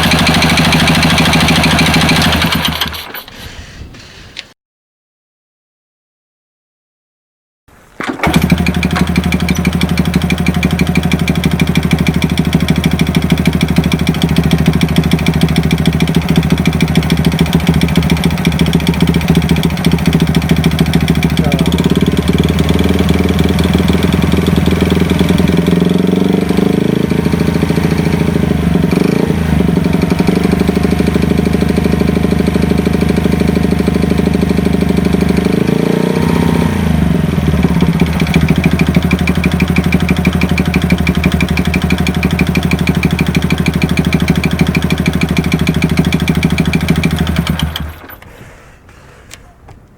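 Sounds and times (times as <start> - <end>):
motorcycle engine running: 0.0 - 3.2, 8.2 - 48.2.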